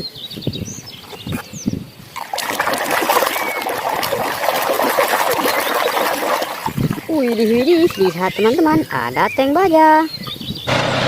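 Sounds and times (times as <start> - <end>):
water running and splashing: 2.1 - 10.0.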